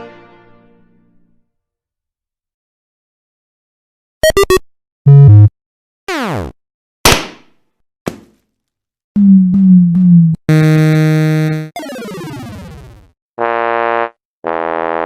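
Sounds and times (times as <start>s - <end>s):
low two-note buzzer: 9.2s - 11.7s.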